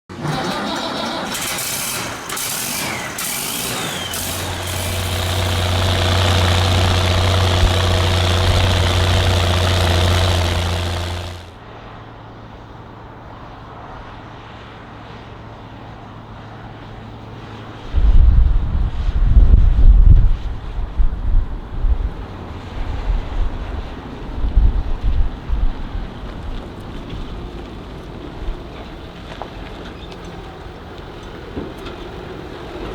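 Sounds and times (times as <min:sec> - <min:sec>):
diesel engine running: 0:00.1 - 0:11.6
wind buffeting microphone: 0:17.9 - 0:29.1.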